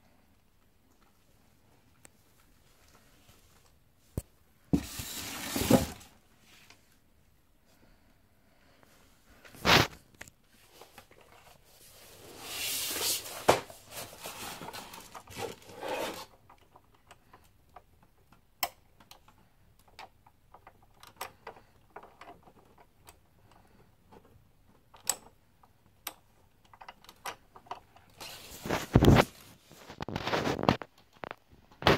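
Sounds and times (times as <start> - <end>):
packaging rustling: 12.0 - 16.3.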